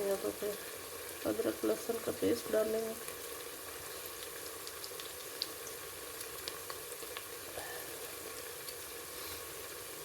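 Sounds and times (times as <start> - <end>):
onions sizzling in hot oil: 0.0 - 10.0.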